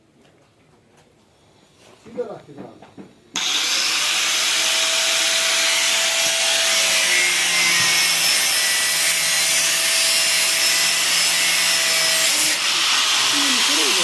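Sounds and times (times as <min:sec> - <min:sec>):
angle grinder cutting scream: 0:03.4 - 0:14.0.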